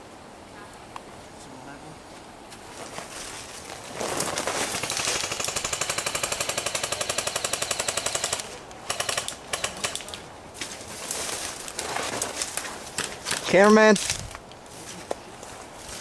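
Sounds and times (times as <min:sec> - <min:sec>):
airsoft gun firing bursts: 0:05.0 - 0:10.0.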